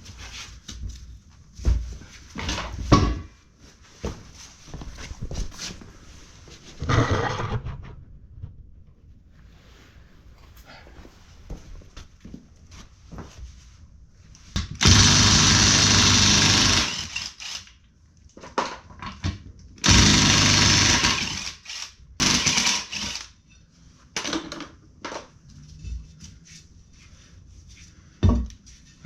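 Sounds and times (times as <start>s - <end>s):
power tool running: 14.8s - 17.7s, 19.8s - 23.3s.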